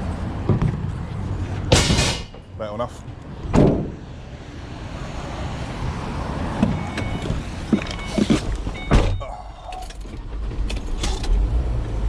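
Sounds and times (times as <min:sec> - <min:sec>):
loud thump: 0:01.7 - 0:02.5, 0:03.5 - 0:04.0.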